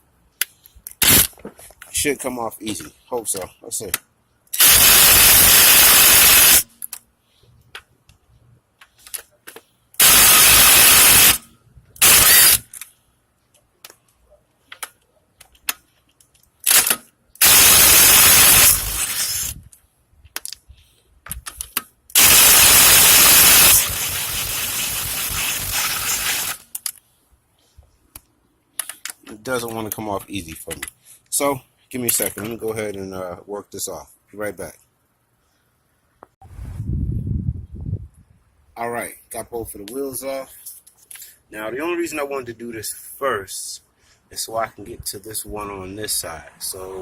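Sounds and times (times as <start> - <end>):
impact wrench rattling: 10.0 - 11.4, 16.7 - 19.6, 22.2 - 26.8.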